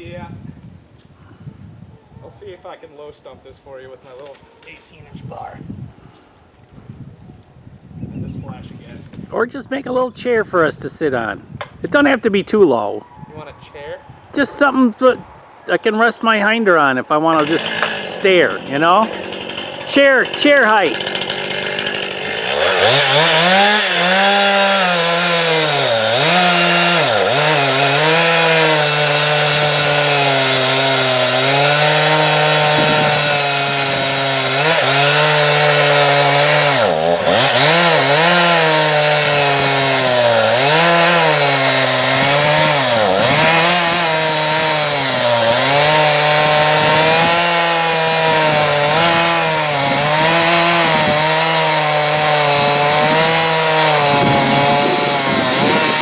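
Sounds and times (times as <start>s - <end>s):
chainsaw cutting wood: 17.3s - 56.0s.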